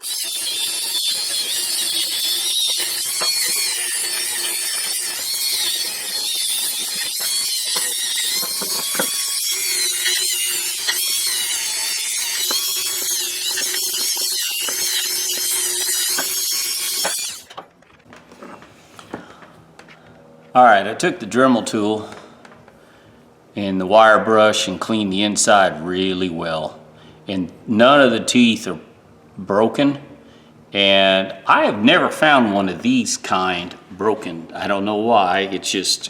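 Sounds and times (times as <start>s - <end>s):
rotary tool wire brush whining: 0.0s - 19.2s.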